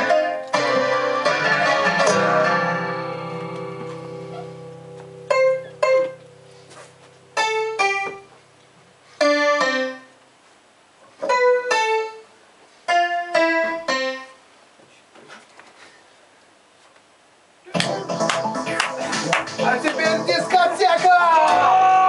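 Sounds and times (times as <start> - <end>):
electric keyboard notes: 0.0 - 10.2, 11.2 - 14.5.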